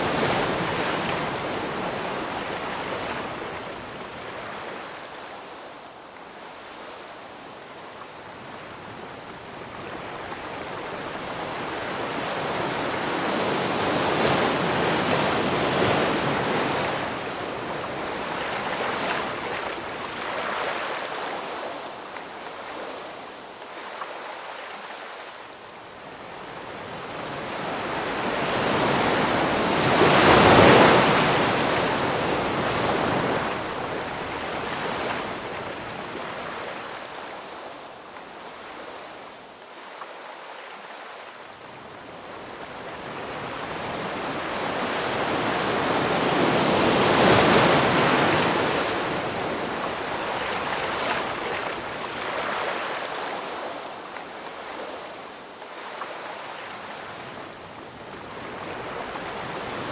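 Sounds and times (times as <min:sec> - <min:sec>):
ocean waves breaking: 0:27.0 - 0:37.0.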